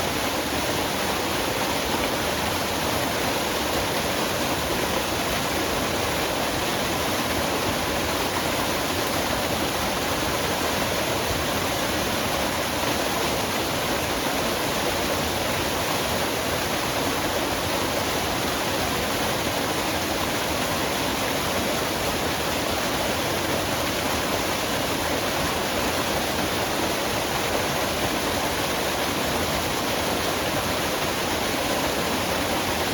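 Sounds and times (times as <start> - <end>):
waterfall splashing: 0.0 - 32.9.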